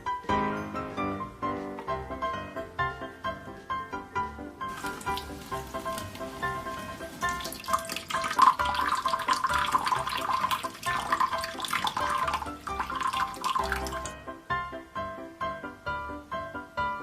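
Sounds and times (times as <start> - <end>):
light background music: 0.0 - 17.0
water running and splashing: 4.7 - 14.2.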